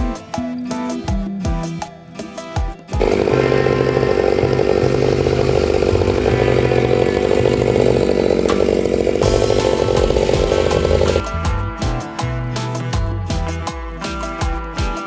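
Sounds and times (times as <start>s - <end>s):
chainsaw running at high revs: 3.0s - 11.2s.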